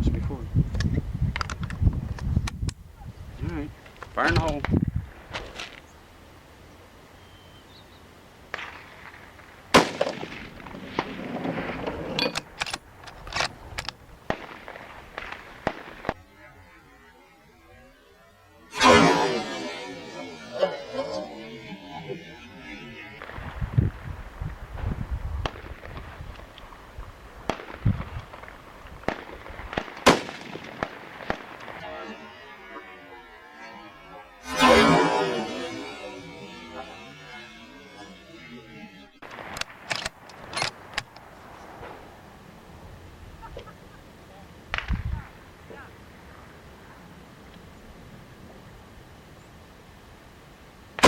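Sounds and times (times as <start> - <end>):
rifle shot with echo: 9.7 - 11.4, 29.0 - 31.8.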